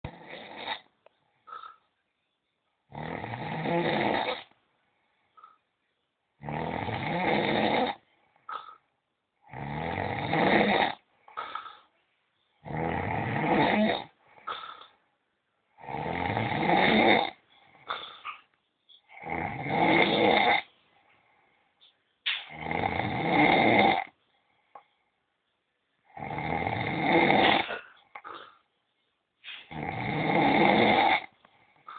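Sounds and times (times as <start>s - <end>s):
quiet breaths: 0.0s - 31.9s
man snoring loudly: 0.1s - 0.8s, 2.9s - 4.5s, 6.4s - 8.0s, 9.5s - 11.0s, 12.6s - 14.1s, 15.8s - 17.4s, 19.2s - 20.6s, 22.5s - 24.1s, 26.1s - 27.6s, 29.7s - 31.3s.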